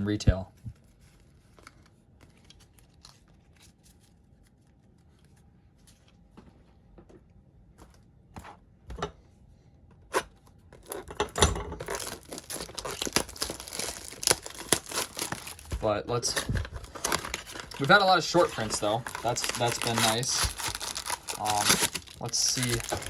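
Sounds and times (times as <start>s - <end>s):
plastic wrapping tearing and crinkling: 10.8s - 11.1s, 11.8s - 23.0s.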